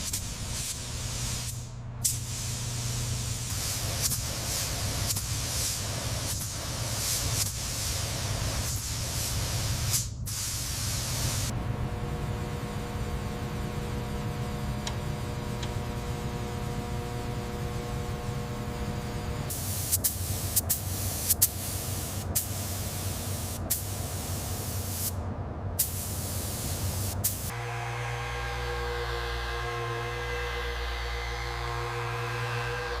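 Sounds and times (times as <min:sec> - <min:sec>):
compressed-air spray hissing: 0:00.0 - 0:11.5, 0:19.5 - 0:25.2, 0:25.8 - 0:27.5
machine hum: 0:11.5 - 0:19.6, 0:27.5 - 0:33.0.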